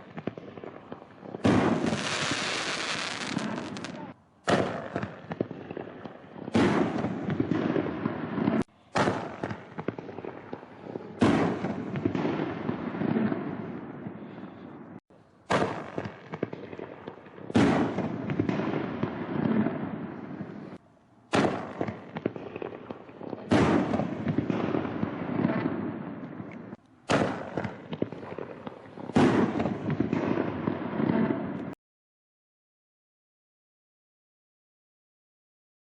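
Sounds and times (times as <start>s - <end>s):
artillery shells bursting: 1.4s - 3.9s.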